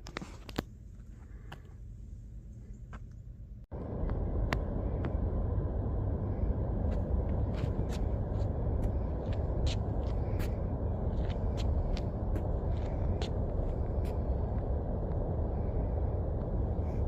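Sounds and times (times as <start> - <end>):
wind buffeting microphone: 3.8 - 17.0.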